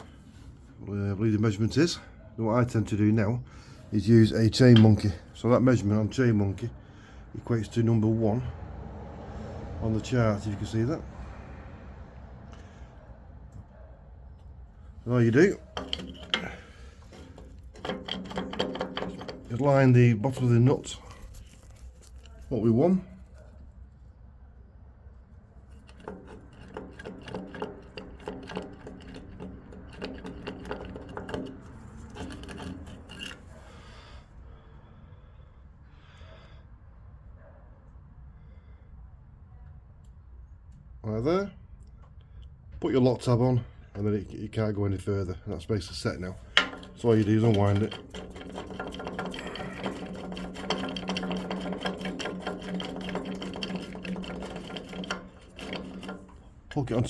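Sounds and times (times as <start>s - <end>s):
gauge adjuster whirring and rattling: 4.2s - 6.2s, 14.9s - 21.3s, 25.7s - 33.5s, 45.9s - 57.0s
threaded adjuster clicking and rubbing: 46.4s - 57.0s.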